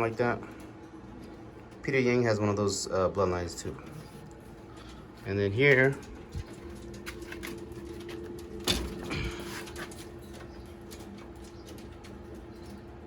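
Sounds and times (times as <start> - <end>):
steady low hum: 0.0 - 13.0
pigeons cooing: 7.8 - 13.0.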